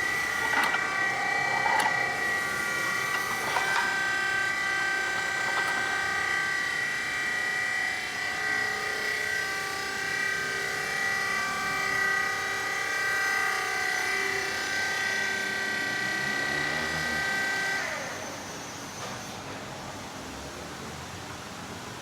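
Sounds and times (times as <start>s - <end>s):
baling press machine whine: 0.0s - 8.6s.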